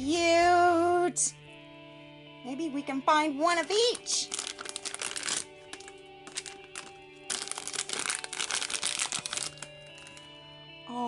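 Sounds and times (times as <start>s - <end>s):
soft background music: 0.0s - 11.0s
plastic bag crinkling and tearing: 3.8s - 10.3s.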